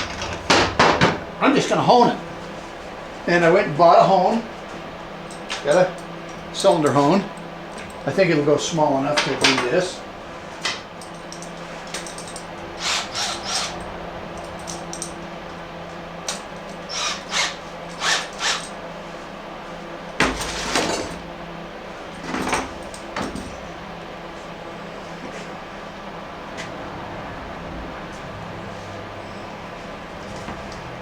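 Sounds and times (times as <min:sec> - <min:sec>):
steady low hum: 0:00.0 - 0:31.0
metal tools clinking: 0:11.0 - 0:15.2.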